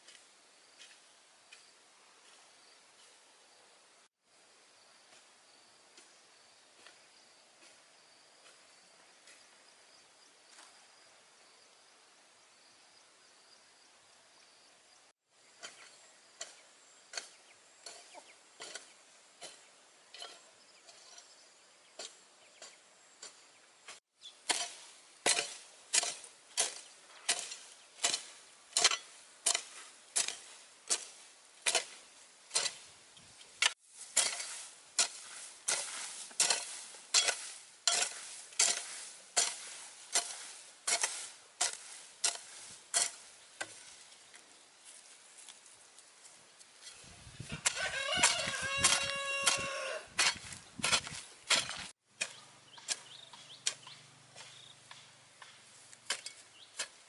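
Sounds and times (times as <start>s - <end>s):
sharp chopping strikes: 47.7s - 56.9s.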